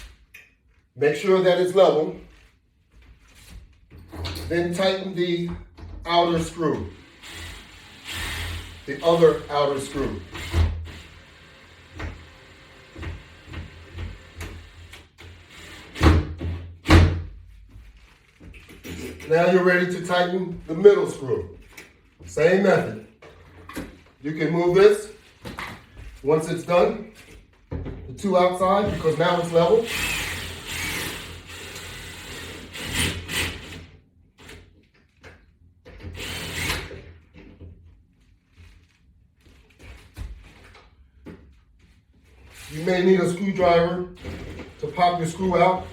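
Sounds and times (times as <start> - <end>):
screw grinding as tightened: 29.0 - 33.8.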